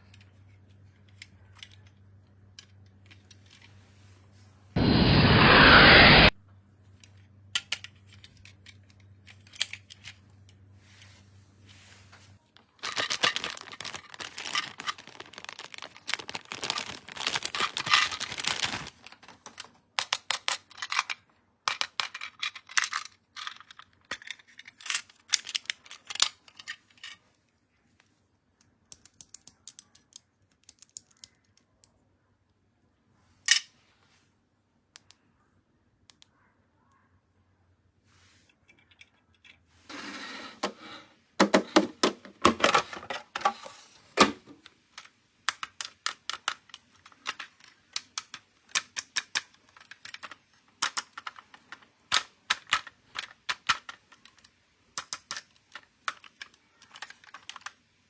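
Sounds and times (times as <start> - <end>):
plastic packaging crinkling and tearing: 12.6 - 21.0
small plastic pieces clicking: 12.8 - 27.1, 28.6 - 32.0, 45.0 - 57.8.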